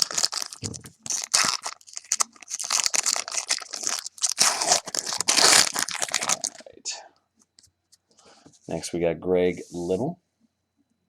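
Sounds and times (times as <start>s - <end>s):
wrapper crinkling and tearing: 0.0s - 6.7s.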